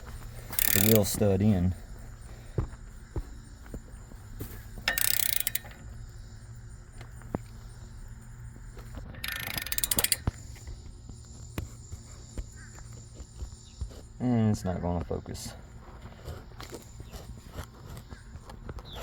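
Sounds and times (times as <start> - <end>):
hand ratchet clicking: 0.3 - 1.5, 4.8 - 5.8, 9.2 - 10.6
single metal clicks: 0.5 - 1.2, 4.8 - 5.8, 9.2 - 10.4.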